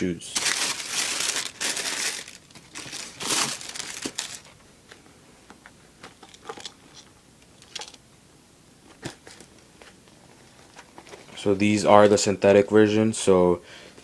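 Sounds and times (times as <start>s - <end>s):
paper packaging rustling: 0.3s - 4.6s.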